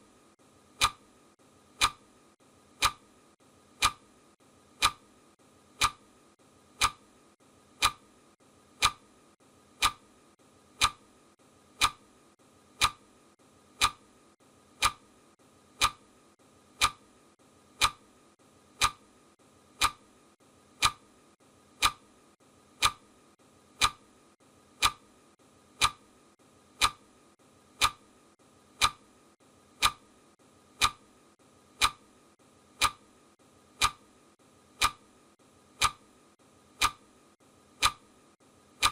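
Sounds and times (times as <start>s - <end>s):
clock ticking: 0.7s - 1.1s, 1.7s - 2.1s, 2.8s - 3.1s, 3.7s - 4.1s, 4.7s - 5.1s, 5.7s - 6.1s, 6.7s - 7.1s, 7.7s - 8.1s, 8.8s - 9.1s, 9.8s - 10.1s, 10.7s - 11.1s, 11.7s - 12.1s, 12.7s - 14.2s, 14.8s - 21.1s, 21.7s - 22.1s, 22.7s - 24.1s, 24.7s - 27.1s, 27.7s - 28.1s, 28.7s - 29.1s, 29.8s - 30.1s, 30.7s - 31.1s, 31.8s - 32.1s, 32.7s - 33.1s, 33.8s - 34.1s, 34.8s - 35.1s, 35.8s - 36.1s, 36.8s - 37.1s, 37.8s - 38.1s.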